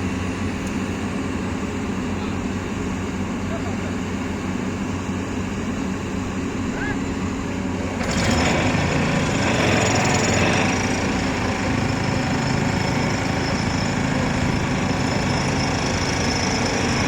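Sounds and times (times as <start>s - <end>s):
excavator engine running: 0.0s - 17.0s
hydraulic pile driver hammering: 7.9s - 17.0s.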